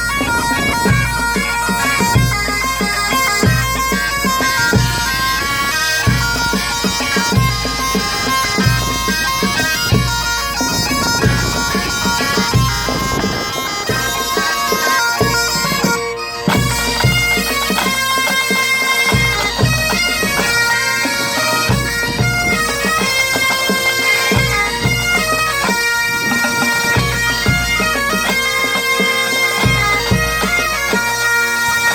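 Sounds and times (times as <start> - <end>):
bagpipes with drone: 0.0 - 31.9.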